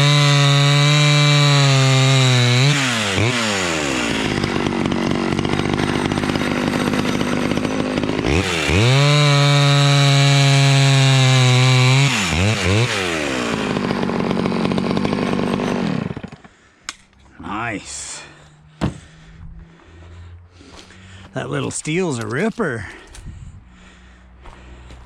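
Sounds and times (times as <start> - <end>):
two-stroke chainsaw revving: 0.0 - 16.6.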